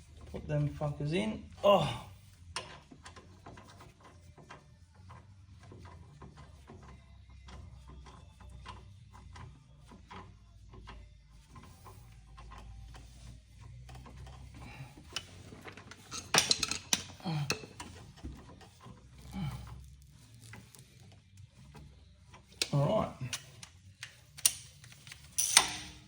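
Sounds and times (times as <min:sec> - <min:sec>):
hand tool clicks: 0:24.3 - 0:26.0.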